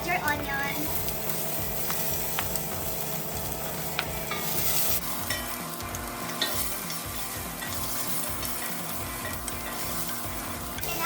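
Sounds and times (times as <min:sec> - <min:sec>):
garlic and onion sizzling in oil: 0:00.0 - 0:11.0
utensil clicking against pot: 0:01.0 - 0:04.5, 0:05.3 - 0:10.3.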